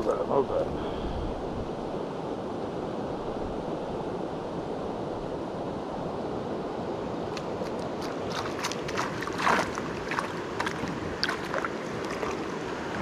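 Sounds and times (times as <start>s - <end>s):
river water rushing: 6.9s - 13.0s.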